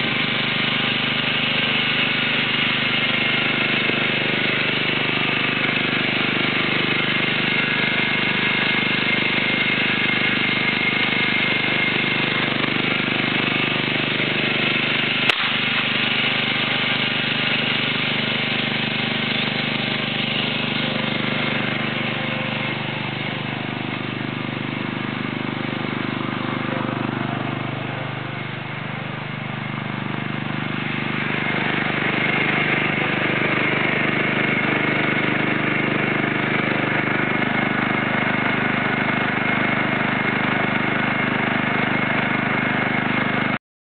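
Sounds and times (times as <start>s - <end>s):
riding lawn mower engine running: 0.0s - 43.6s
short sharp crack: 15.3s - 15.9s.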